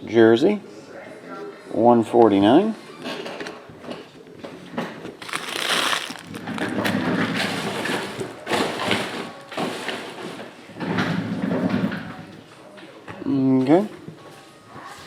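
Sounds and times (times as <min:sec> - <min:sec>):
plastic wrappers crinkling: 0:05.2 - 0:08.2.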